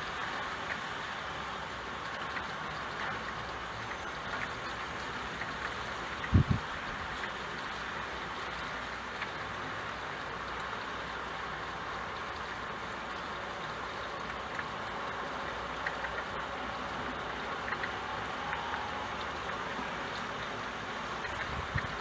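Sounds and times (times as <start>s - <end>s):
faint raindrop ticks: 0.0s - 22.0s
steady rain hiss: 0.0s - 22.0s.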